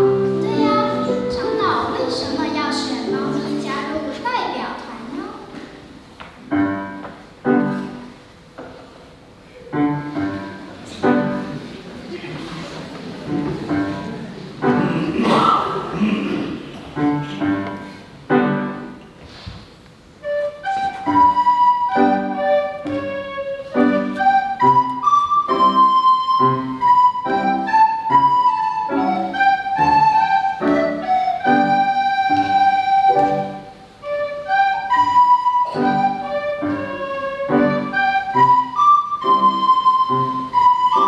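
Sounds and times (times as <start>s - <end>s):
recorder ensemble playing: 0.0s - 5.8s, 20.2s - 41.0s.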